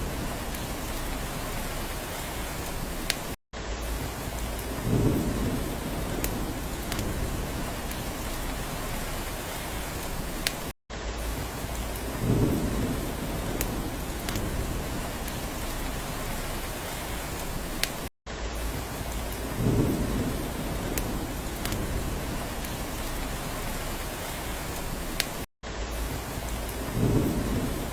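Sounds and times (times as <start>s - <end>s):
low rumble of thunder: 0.0s - 2.5s, 3.8s - 10.1s, 11.2s - 17.2s, 18.6s - 24.1s, 26.0s - 27.9s
heavy rain: 0.0s - 27.9s
sharp water drips: 19.0s - 27.8s.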